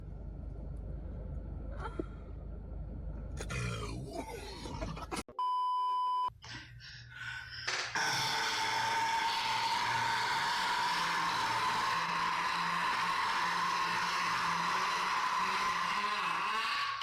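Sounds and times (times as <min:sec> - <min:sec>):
low rumble: 0:00.0 - 0:05.2.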